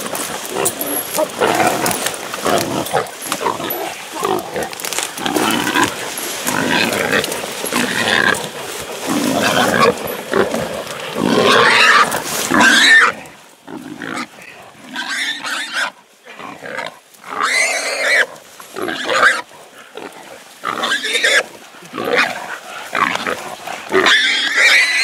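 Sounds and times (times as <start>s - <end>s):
wild boar squealing: 11.2s - 13.2s, 14.0s - 25.0s.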